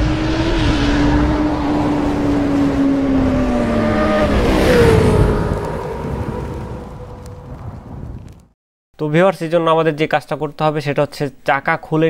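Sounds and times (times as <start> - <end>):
low rumble: 0.0 - 8.6.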